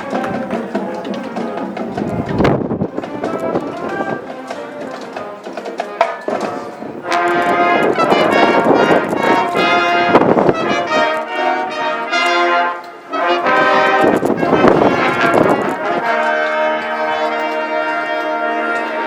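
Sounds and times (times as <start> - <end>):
percussion ticks: 0.0 - 11.3
marching band playing: 0.0 - 19.0
brass section held chords: 7.0 - 19.0.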